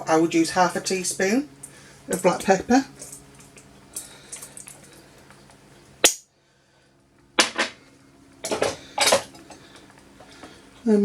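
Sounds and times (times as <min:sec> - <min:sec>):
kitchen utensils clattering: 0:08.4 - 0:09.6.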